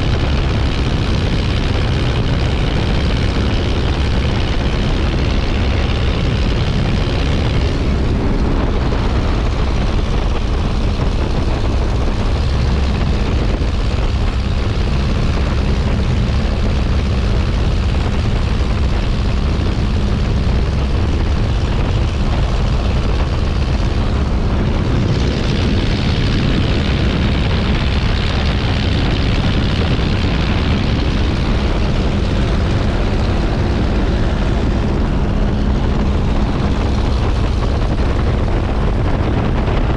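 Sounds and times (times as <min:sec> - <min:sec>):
propeller aircraft engine running: 0:00.0 - 0:39.9.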